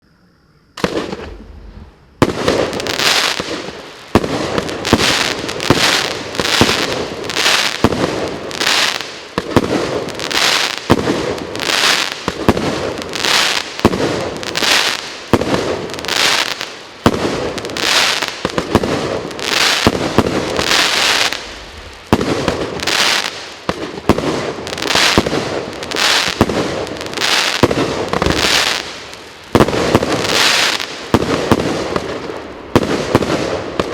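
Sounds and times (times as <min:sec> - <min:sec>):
firework hiss and crackle: 0:00.8 - 0:33.9.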